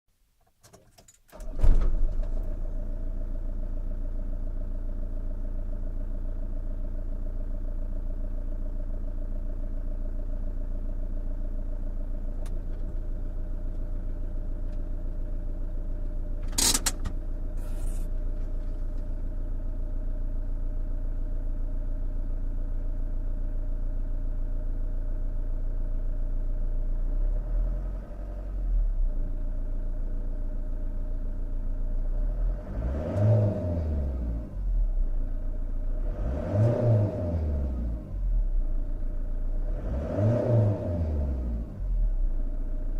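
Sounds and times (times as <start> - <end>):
diesel van engine idling: 2.0 - 27.1
sharp click: 16.4 - 17.2.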